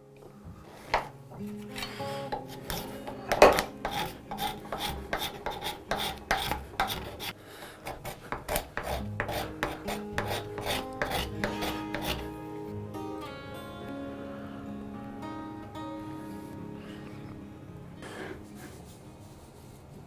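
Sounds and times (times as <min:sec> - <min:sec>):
background music: 0:00.0 - 0:19.9
file rasping on wood: 0:00.7 - 0:01.1, 0:01.8 - 0:12.4.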